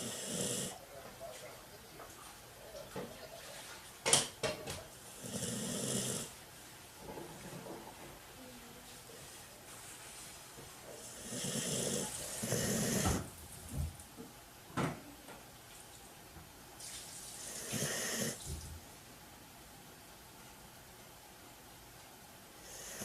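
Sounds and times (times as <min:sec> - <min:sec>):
raspy snoring: 0:00.0 - 0:00.8, 0:05.2 - 0:06.3, 0:11.0 - 0:13.3, 0:17.4 - 0:18.4, 0:22.6 - 0:23.0.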